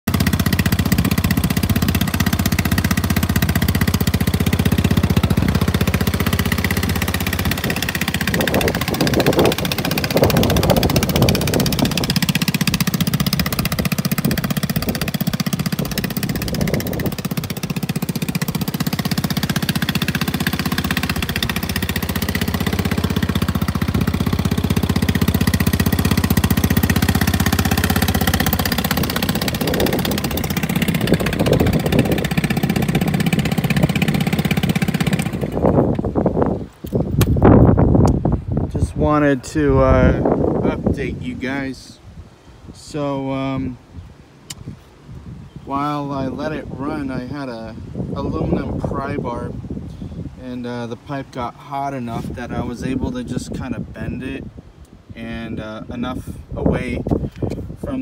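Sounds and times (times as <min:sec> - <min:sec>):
scooter engine running: 0:00.0 - 0:37.7.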